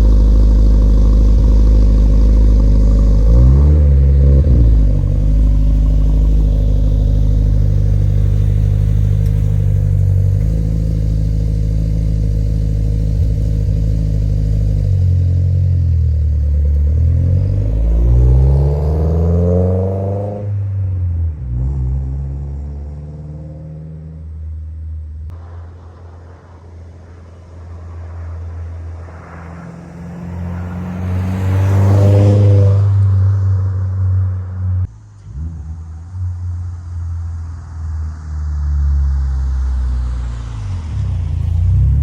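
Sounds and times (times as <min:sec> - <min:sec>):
car exhaust revving: 0:00.0 - 0:37.6.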